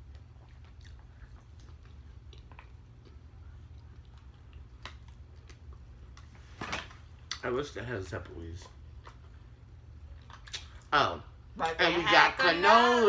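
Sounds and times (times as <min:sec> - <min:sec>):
person chewing food: 0:00.0 - 0:06.3, 0:08.6 - 0:10.9
low steady hum: 0:00.0 - 0:13.0.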